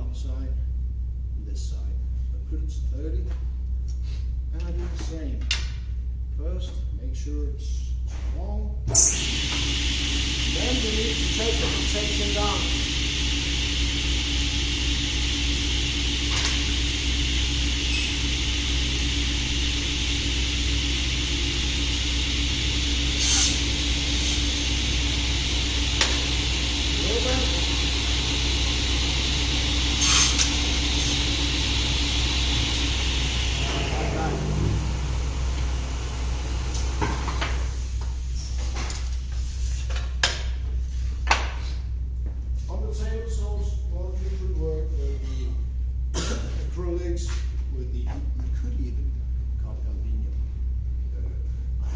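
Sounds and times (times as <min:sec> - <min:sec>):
saw humming with high whine: 0:08.9 - 0:38.4.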